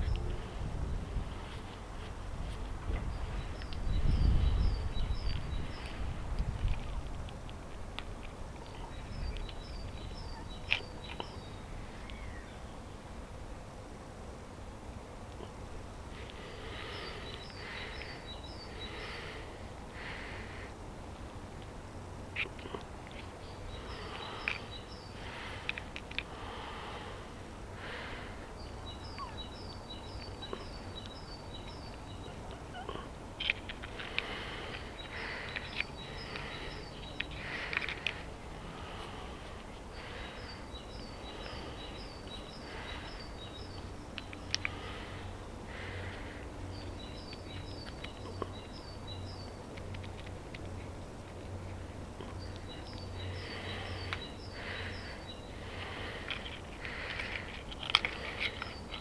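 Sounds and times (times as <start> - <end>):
songbird chirping: 0.0 - 7.1, 8.2 - 13.1, 16.2 - 20.8, 22.3 - 59.0
background hiss: 0.0 - 59.0
small bird calling: 8.6 - 12.8, 16.2 - 20.7, 22.4 - 27.2, 27.8 - 49.6, 52.2 - 59.0.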